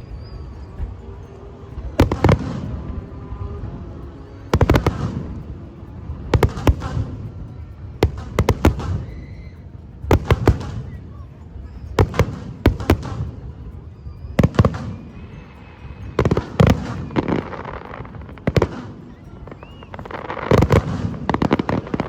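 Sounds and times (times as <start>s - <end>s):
steady low rumble: 0.0s - 22.0s
fireworks bangs and cracks: 2.0s - 3.0s, 4.5s - 5.4s, 6.3s - 9.2s, 10.1s - 11.0s, 12.0s - 13.6s, 14.4s - 15.1s, 16.1s - 22.0s.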